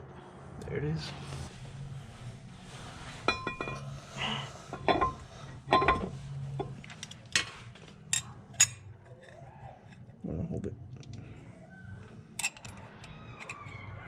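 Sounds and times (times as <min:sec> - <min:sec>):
metal tools clinking: 0:03.3 - 0:03.9, 0:04.7 - 0:07.2, 0:12.4 - 0:13.8.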